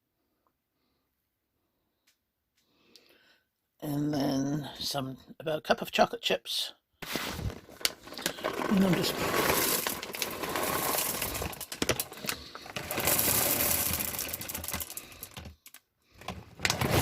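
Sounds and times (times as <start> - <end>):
chocolate chips rattling into pan: 7.8 - 15.8.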